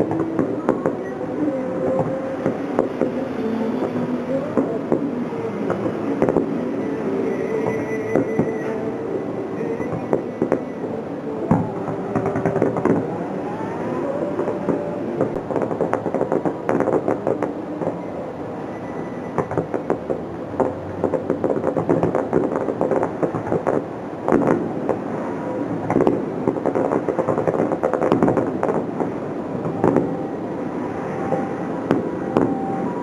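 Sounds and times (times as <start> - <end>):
fireworks bangs and pops: 0.0 - 8.9, 9.6 - 13.2, 13.9 - 33.0
continuous rumble: 0.0 - 33.0.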